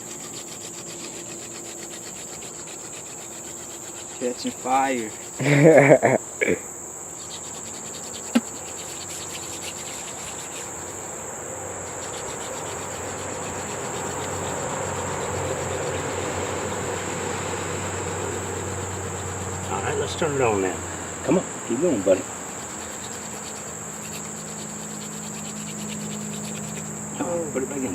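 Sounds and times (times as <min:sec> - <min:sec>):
hand drill rasping on wood: 0:00.0 - 0:06.0, 0:07.1 - 0:20.8, 0:21.7 - 0:27.9
high insect drone: 0:00.0 - 0:27.9
person speaking: 0:04.2 - 0:06.6, 0:27.2 - 0:27.9.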